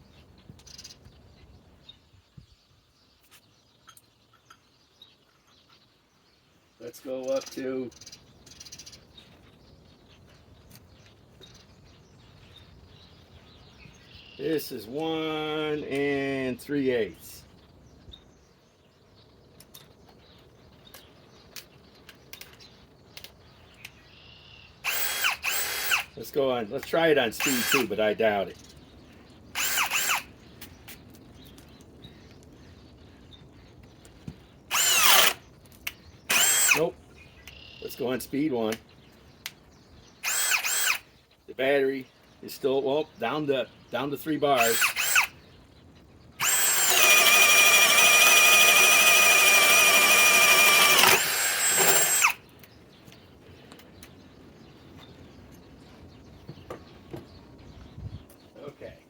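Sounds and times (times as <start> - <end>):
cordless hammer drill motor: 24.8 - 26.2, 27.4 - 28.0, 29.5 - 30.3, 34.7 - 35.4, 36.3 - 36.8, 40.2 - 41.1, 44.6 - 45.4, 46.4 - 52.5.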